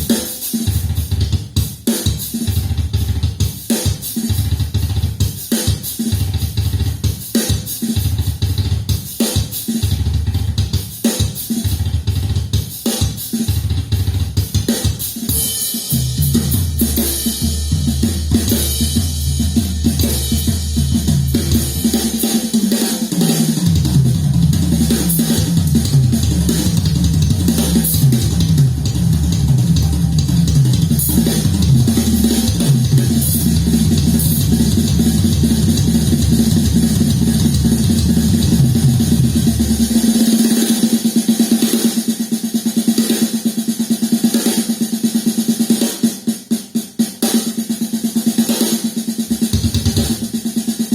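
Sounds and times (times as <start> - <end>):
deep bass line: 16.0 - 22.2, 23.7 - 40.2.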